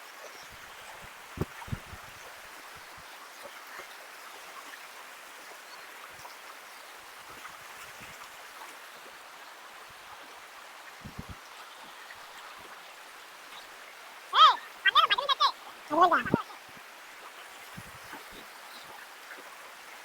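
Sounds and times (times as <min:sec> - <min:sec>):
stream water rushing: 0:00.0 - 0:20.0.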